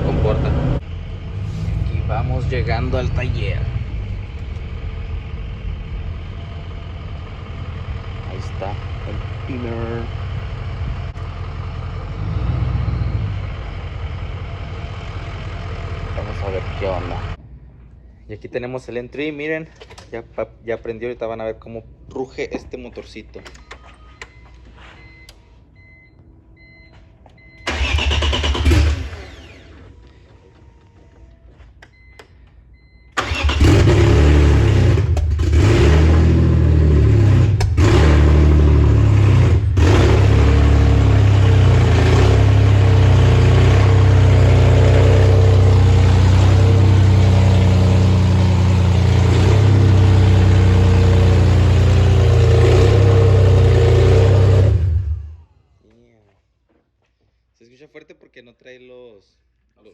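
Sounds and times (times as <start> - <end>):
engine cranking and running loud: 27.7 - 29.9, 33.2 - 55.4.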